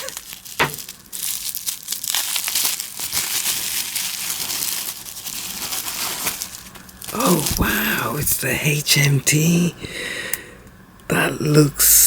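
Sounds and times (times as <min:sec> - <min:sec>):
packaging crinkling and rustling: 0:00.0 - 0:08.4.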